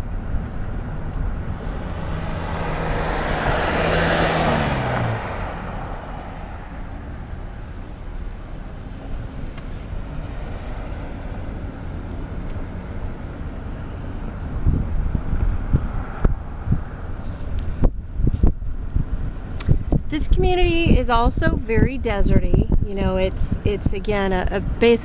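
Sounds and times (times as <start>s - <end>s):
low engine note dropping in pitch: 0.0s - 9.4s
car road and engine rumble: 0.0s - 25.0s
rushing swell: 1.5s - 7.8s.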